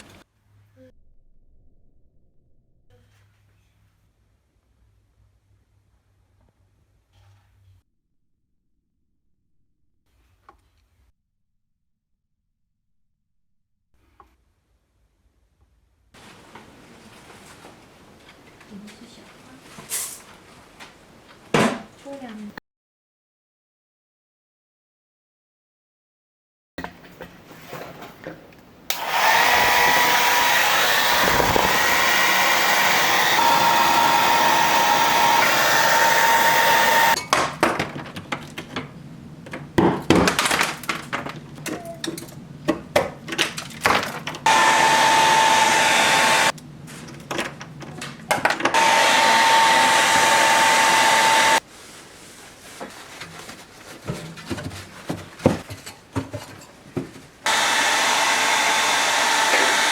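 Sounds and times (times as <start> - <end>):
hair dryer blowing: 28.9 - 37.2, 44.5 - 46.5, 48.7 - 51.6, 57.4 - 59.9.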